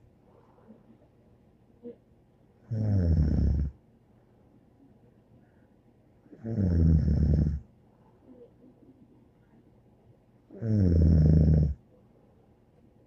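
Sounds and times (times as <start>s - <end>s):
snoring: 2.7s - 3.8s, 6.4s - 7.6s, 10.6s - 11.8s.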